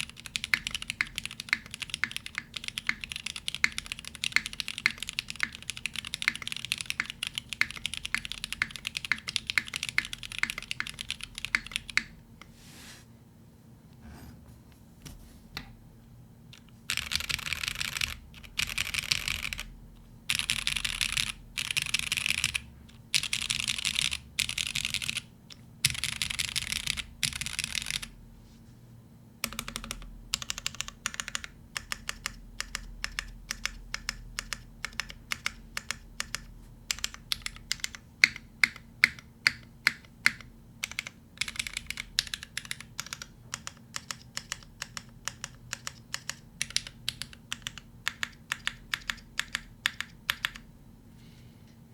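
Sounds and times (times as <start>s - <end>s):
mechanical keyboard typing: 0.0s - 12.2s, 16.6s - 19.7s, 20.3s - 28.2s, 29.4s - 50.7s.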